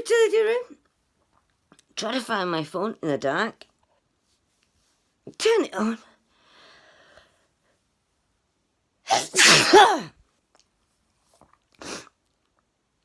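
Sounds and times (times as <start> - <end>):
woman sneezing: 9.1 - 10.1.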